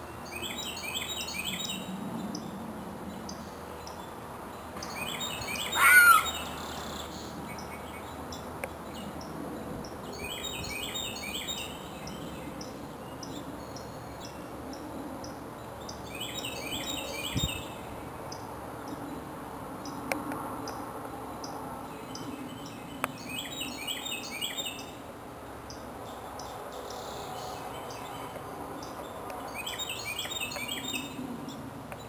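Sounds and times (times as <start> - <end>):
steady background hiss: 0.0 - 32.0
bird rising call: 5.1 - 6.9.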